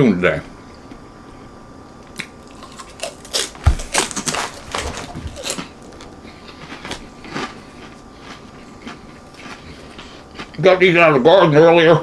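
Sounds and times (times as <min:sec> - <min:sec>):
crunchy food chewing: 0:02.0 - 0:11.0.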